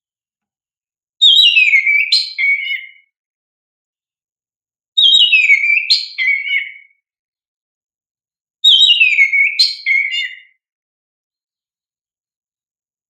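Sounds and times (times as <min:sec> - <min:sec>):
bird whistled song: 0:01.2 - 0:03.1, 0:05.0 - 0:07.0, 0:08.6 - 0:10.6.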